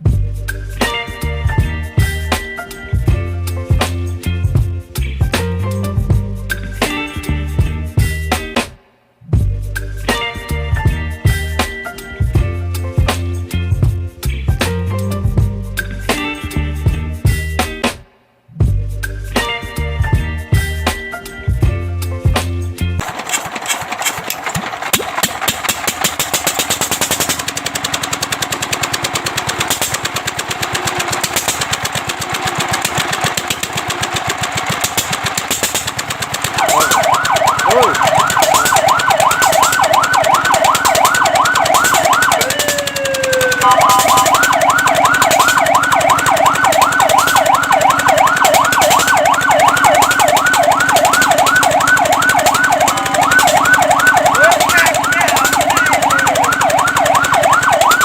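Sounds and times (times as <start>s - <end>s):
vehicle engine clattering: 23.0s - 58.0s
fire truck siren yelping: 23.3s - 58.0s.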